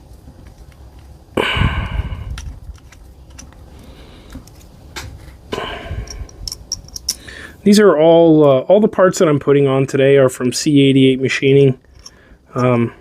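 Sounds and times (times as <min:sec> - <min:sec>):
hand tools and screws clinking: 0:02.3 - 0:03.6, 0:06.0 - 0:07.4, 0:11.8 - 0:12.9
metal clatter with ring: 0:06.0 - 0:07.3, 0:11.8 - 0:12.8.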